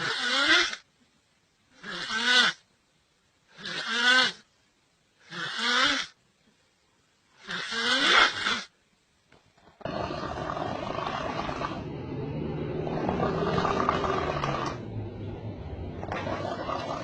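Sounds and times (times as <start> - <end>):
person snoring: 9.8 - 15.0.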